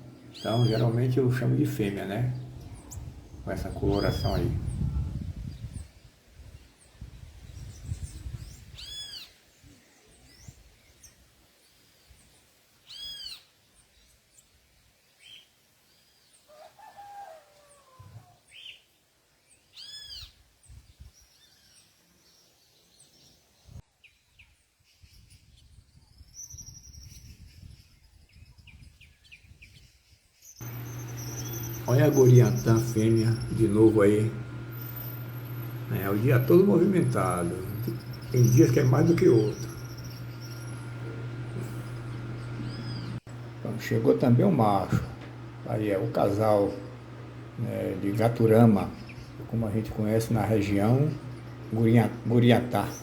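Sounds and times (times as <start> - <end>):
bird calls rising and falling: 0.0 - 4.8, 30.6 - 53.0
faint bird chirps: 0.1 - 5.9, 12.8 - 14.2, 19.6 - 43.3.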